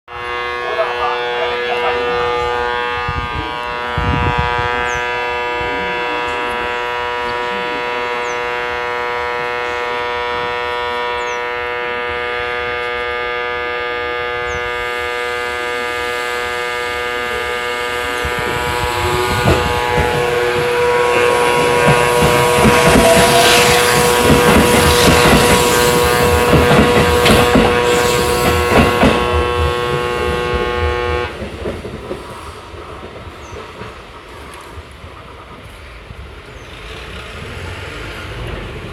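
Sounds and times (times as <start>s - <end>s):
electric train humming: 0.1s - 38.9s
wheels rumbling on rail: 1.2s - 38.9s
traction motor whine: 17.2s - 30.3s.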